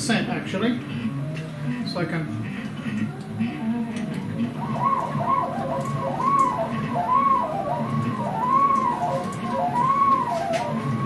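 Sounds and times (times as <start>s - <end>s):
stepper motors whining: 2.6s - 11.0s.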